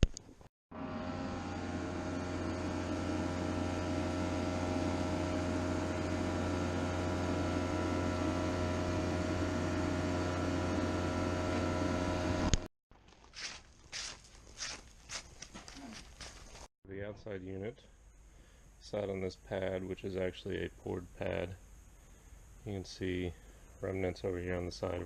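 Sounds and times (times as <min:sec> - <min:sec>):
machine humming: 0:00.7 - 0:12.7.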